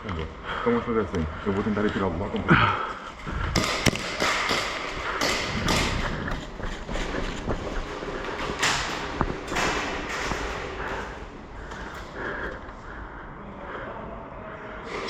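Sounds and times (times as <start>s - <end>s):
footsteps with gear rustling: 1.1s - 13.0s.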